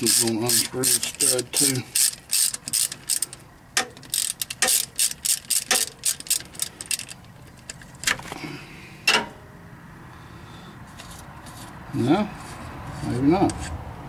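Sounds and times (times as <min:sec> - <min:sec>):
socket ratchet clicking: 0:00.0 - 0:07.8.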